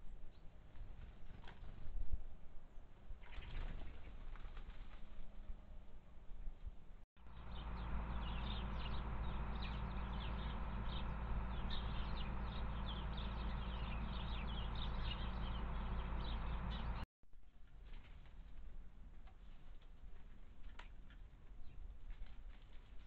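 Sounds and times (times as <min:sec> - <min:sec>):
small birds chirping: 0:07.2 - 0:17.1.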